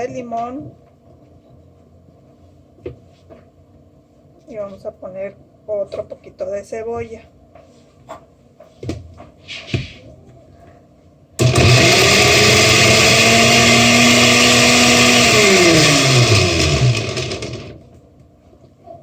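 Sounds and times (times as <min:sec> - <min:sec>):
blender running: 0:11.4 - 0:17.8.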